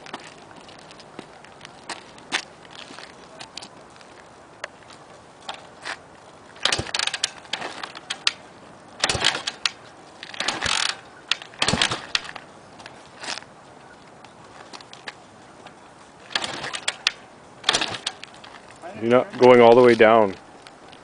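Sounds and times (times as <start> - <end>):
motorcycle kickstarter clanking: 6.6 - 8.4, 9.0 - 12.4, 16.2 - 18.7.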